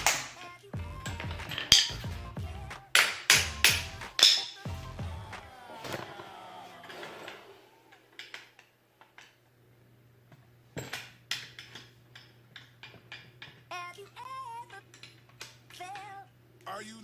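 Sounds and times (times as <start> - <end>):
hand tools clinking on metal: 1.1 - 2.1, 3.0 - 4.7
faint steady hum: 3.5 - 17.0.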